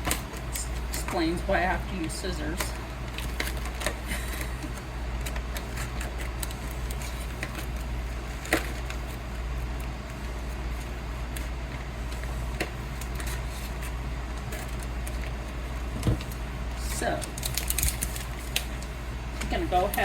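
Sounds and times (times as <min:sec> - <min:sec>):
steady low hum: 0:00.0 - 0:20.0
scissors cutting plastic package: 0:17.0 - 0:18.9.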